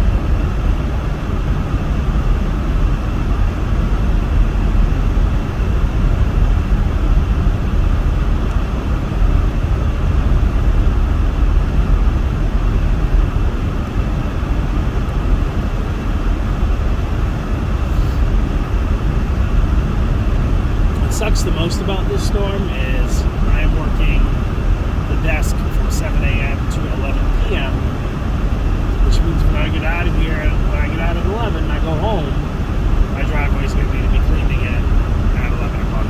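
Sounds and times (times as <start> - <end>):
car tyres and engine rumbling: 0.0 - 36.0
defroster fan blowing: 0.0 - 36.0.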